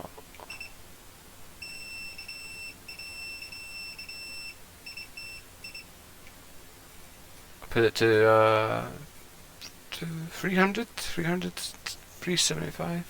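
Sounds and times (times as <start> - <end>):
soldering station beeping: 1.6 - 5.9.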